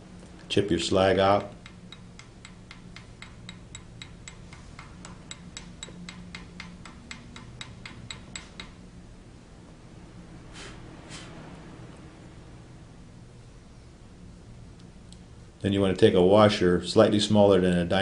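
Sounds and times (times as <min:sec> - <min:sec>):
chipping hammer tapping metal: 0:01.4 - 0:08.8.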